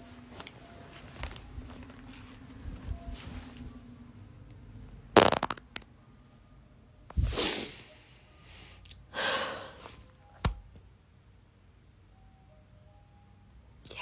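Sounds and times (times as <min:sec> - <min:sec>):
loud breathy exhales: 0:07.2 - 0:10.0.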